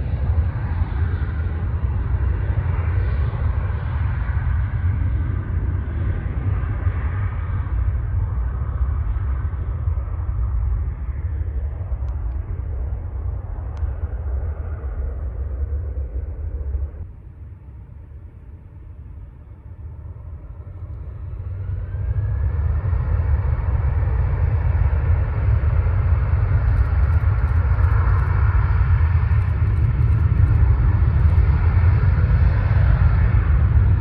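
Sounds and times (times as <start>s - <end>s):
deep rumble: 0.0s - 34.0s
jet engine noise: 0.0s - 34.0s.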